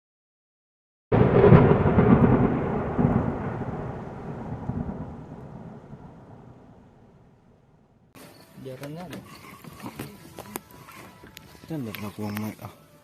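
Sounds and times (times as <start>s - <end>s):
thunder rumbling: 1.1s - 8.1s.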